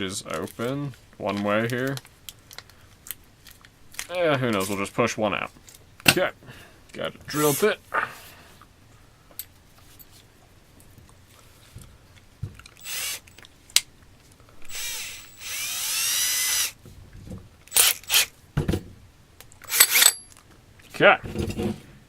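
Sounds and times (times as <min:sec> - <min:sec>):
power drill motor whining: 0:12.8 - 0:13.3, 0:14.6 - 0:16.8, 0:17.7 - 0:18.3.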